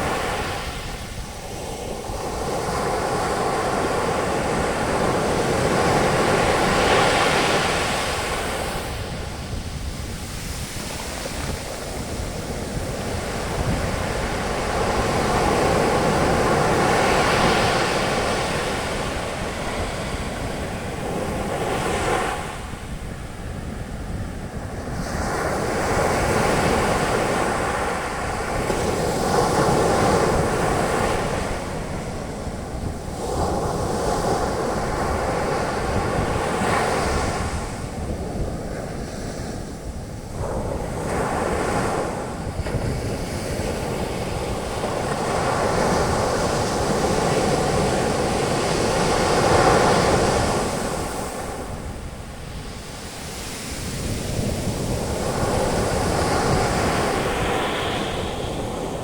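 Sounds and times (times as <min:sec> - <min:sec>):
sea surf breaking on beach: 0:00.0 - 0:59.0.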